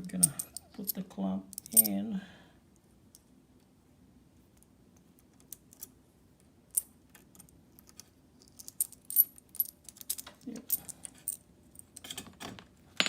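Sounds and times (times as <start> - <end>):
metal clicks and clinks: 0.1 - 2.0.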